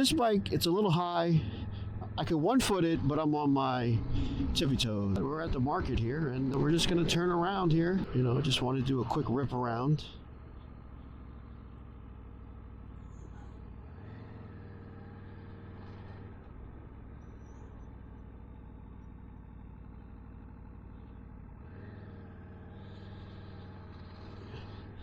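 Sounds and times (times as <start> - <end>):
motorcycle engine running: 0.0 - 25.0.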